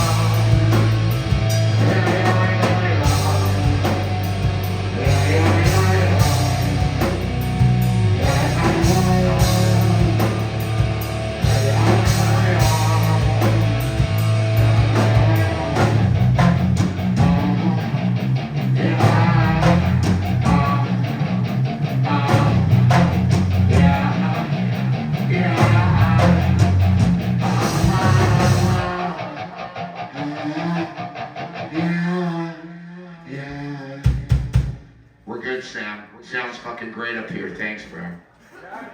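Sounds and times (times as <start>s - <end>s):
drum kit: 0.0s - 28.9s, 34.0s - 35.0s
bass guitar: 0.0s - 31.8s
electric guitar: 0.0s - 33.2s.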